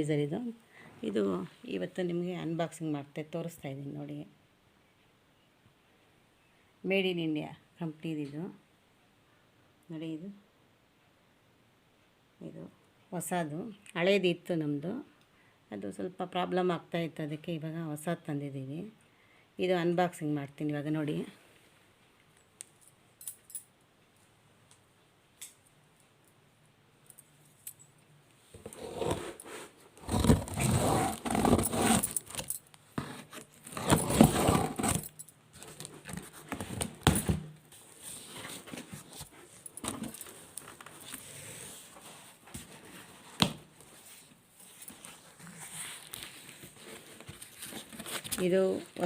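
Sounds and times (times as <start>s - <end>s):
cardboard and plastic rustling: 28.6s - 49.0s.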